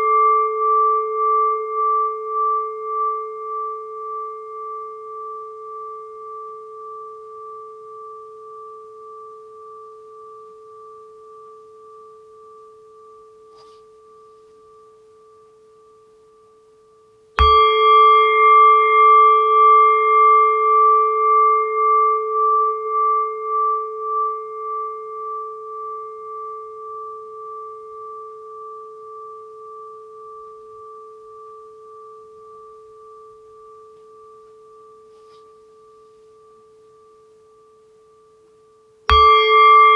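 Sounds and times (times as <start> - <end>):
singing bowl ringing: 0.0 - 39.9.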